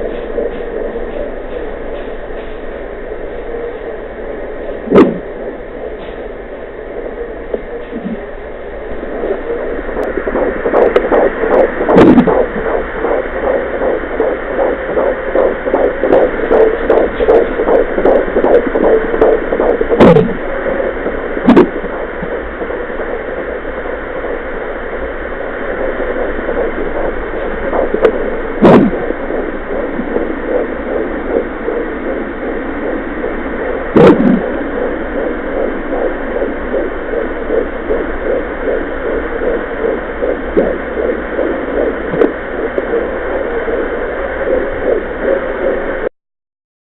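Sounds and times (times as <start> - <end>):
fetal heartbeat whooshing pulse: 0.0 - 46.1
loud single thumps: 4.8 - 5.2, 20.0 - 20.4, 28.0 - 29.0.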